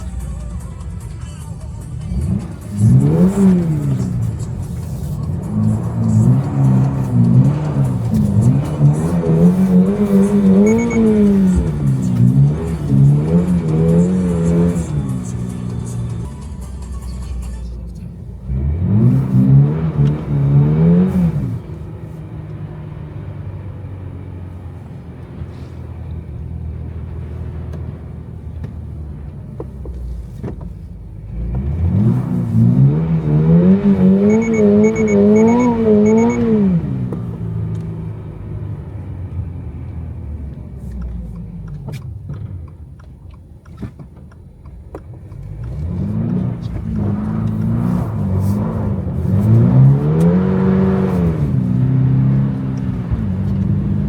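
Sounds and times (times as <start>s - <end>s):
car engine revving: 0.0s - 54.0s
short high beeps: 10.5s - 11.5s, 34.2s - 36.6s.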